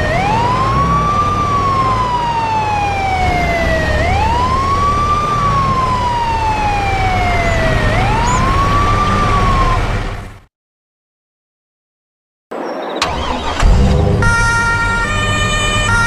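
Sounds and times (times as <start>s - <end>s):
siren wailing: 0.0s - 10.3s, 13.0s - 16.0s.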